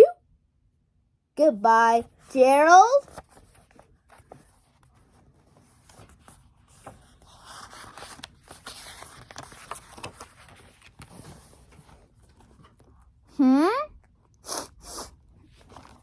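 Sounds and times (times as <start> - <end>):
paper rustling: 3.0 - 13.1, 15.4 - 16.0.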